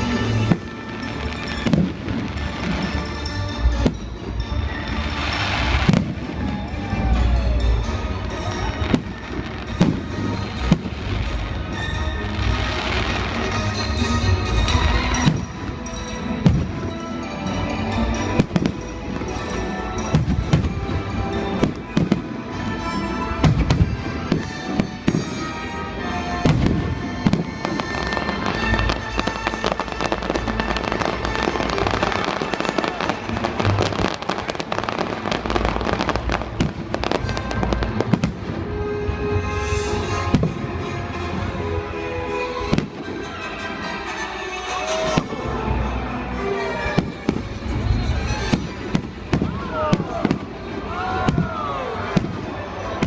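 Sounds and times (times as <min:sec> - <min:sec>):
fireworks bangs: 0:00.0 - 0:03.1, 0:05.0 - 0:07.7, 0:08.3 - 0:15.8, 0:18.4 - 0:38.8, 0:39.6 - 0:40.7, 0:42.6 - 0:43.5, 0:46.8 - 0:53.0
music playing: 0:00.0 - 0:53.0.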